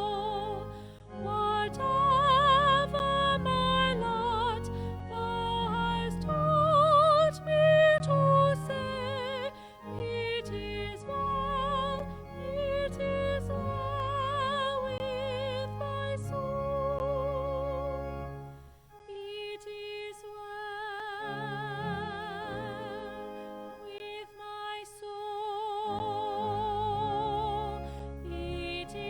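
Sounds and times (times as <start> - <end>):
sustained low accompaniment: 0.0 - 18.8, 25.9 - 29.0.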